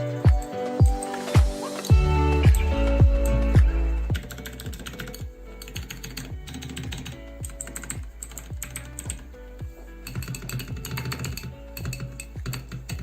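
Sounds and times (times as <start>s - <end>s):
background music with beat: 0.0s - 13.0s
mechanical keyboard typing: 4.1s - 9.2s, 10.1s - 13.0s.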